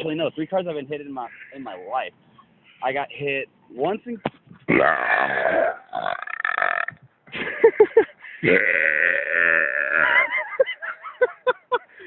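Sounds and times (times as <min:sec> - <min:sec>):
man belching loudly: 0:04.7 - 0:07.1, 0:08.4 - 0:10.3.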